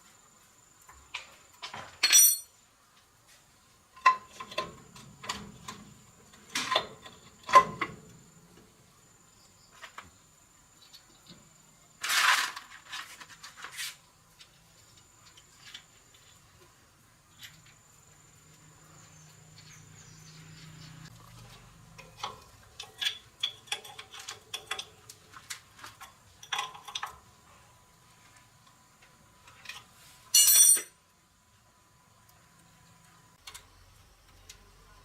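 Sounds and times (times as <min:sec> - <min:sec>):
metal tools clinking on workbench: 0:01.7 - 0:02.5, 0:30.3 - 0:31.0.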